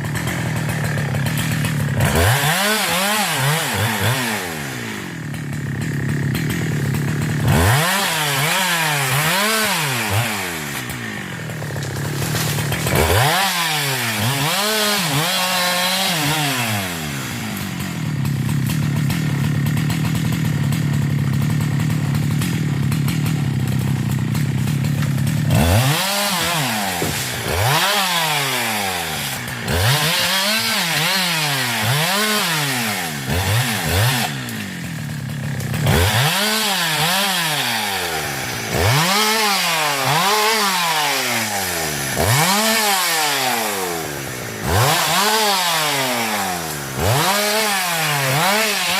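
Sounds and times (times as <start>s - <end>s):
chainsaw revving: 0.0s - 48.9s.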